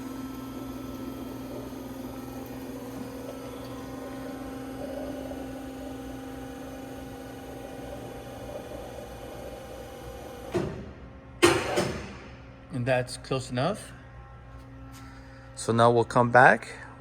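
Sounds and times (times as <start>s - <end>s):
saw machinery humming: 0.0s - 10.6s.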